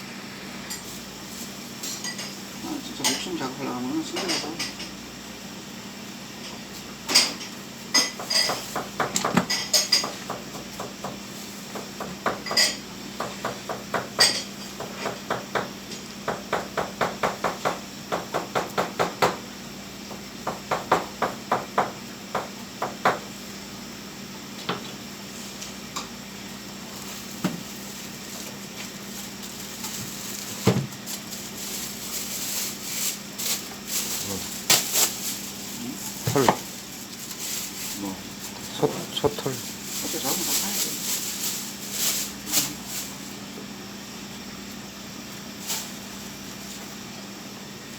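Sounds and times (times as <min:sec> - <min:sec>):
steady low hum: 0:19.3 - 0:45.0.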